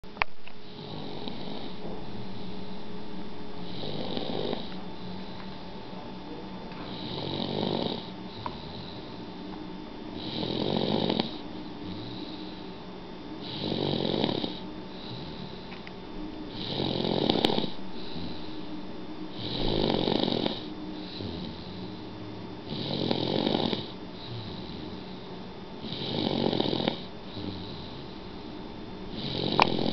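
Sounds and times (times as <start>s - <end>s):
baby snoring: 0.7s - 2.4s, 3.6s - 5.4s, 6.8s - 9.2s, 10.2s - 12.8s, 13.4s - 15.7s, 16.5s - 18.6s, 19.3s - 22.0s, 22.6s - 28.5s, 29.1s - 29.9s.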